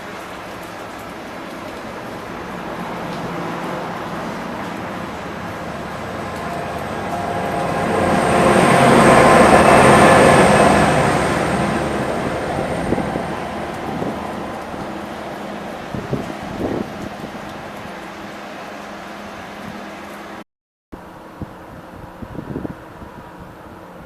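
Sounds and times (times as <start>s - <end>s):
train passing: 0.0s - 20.4s
thin high whine: 5.4s - 15.7s.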